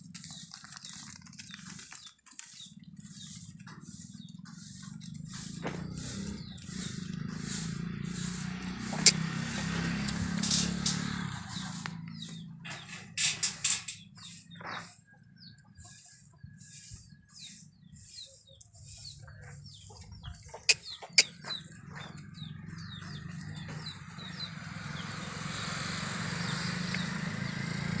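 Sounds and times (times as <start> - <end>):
birds chirping: 0.0 - 28.0
sharp clicks: 8.9 - 9.3.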